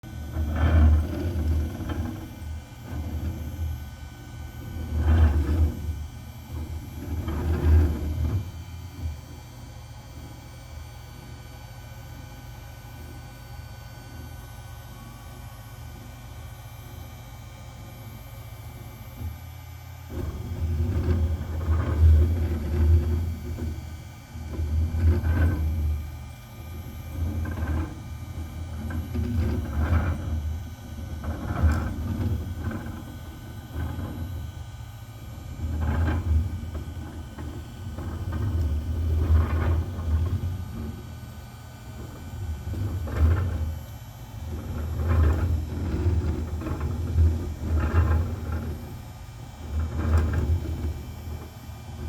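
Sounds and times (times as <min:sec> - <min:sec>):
cnc table rumbling: 0:00.0 - 0:52.0.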